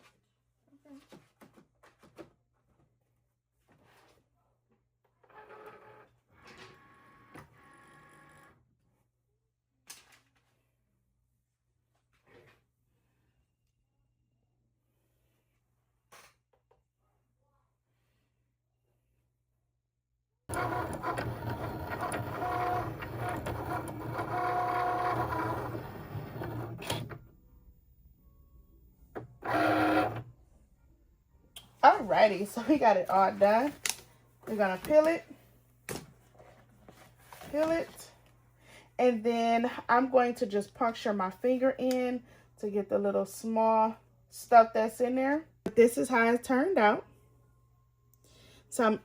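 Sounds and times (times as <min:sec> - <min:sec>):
cutting machine motors whining: 0:20.5 - 0:27.7, 0:29.1 - 0:30.3.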